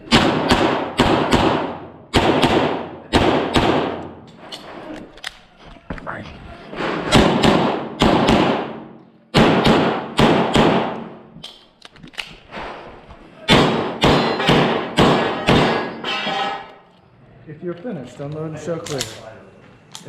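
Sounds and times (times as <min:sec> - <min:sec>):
handgun shots echoing: 0:00.1 - 0:04.2, 0:07.1 - 0:11.7, 0:13.5 - 0:16.0.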